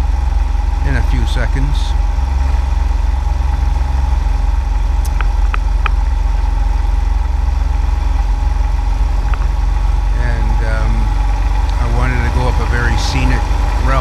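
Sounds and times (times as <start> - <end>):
motorcycle engine rumble: 0.0 - 14.0.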